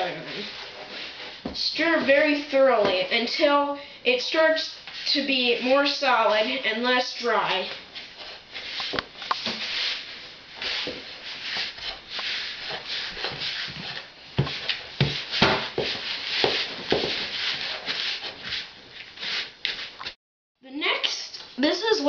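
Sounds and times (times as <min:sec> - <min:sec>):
dough stirred in a bowl: 0:04.6 - 0:20.0.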